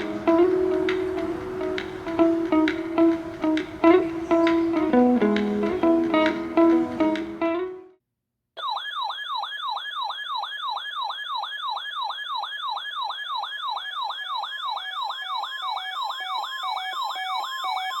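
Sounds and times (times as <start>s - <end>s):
electronic siren yelping: 8.6s - 18.0s.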